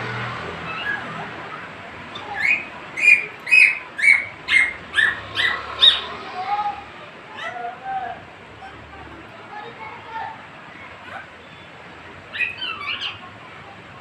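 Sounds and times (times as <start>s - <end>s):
parrot calling: 0.6s - 1.2s, 2.1s - 6.2s, 12.3s - 13.3s.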